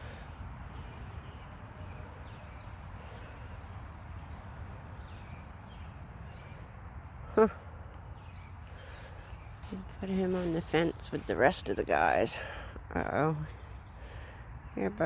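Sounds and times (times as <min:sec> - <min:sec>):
distant birds chirping: 0:00.0 - 0:15.0.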